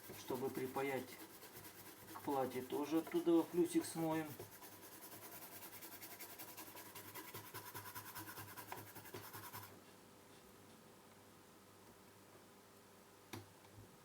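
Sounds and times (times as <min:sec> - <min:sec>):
brush scrubbing circuit board: 0:00.0 - 0:09.7.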